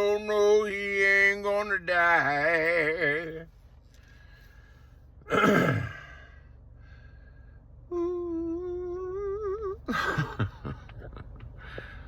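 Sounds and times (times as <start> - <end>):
man humming: 7.9 - 10.6.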